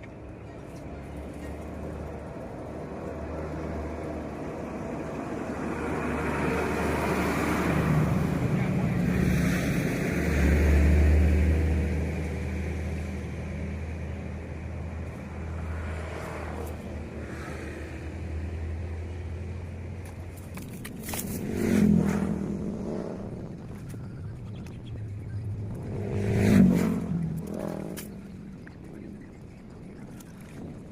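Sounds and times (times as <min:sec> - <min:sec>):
motor engine humming: 0:22.1 - 0:30.9.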